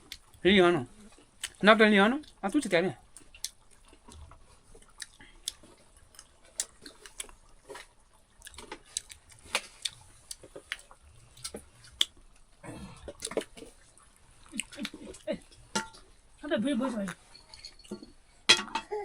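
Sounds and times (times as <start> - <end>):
chewing: 0.0 - 16.4, 17.0 - 18.5.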